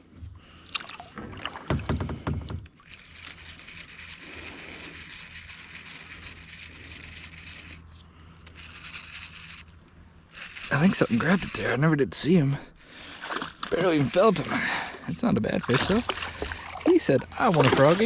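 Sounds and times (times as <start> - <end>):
water splashing: 12.9 - 18.0.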